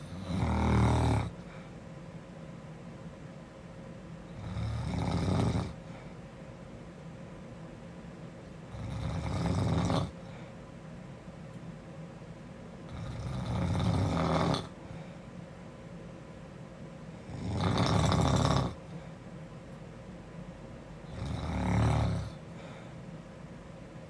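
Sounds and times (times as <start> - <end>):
girl snoring: 0.0 - 1.4, 4.4 - 5.9, 8.8 - 10.2, 12.9 - 14.8, 17.2 - 18.9, 21.1 - 22.4.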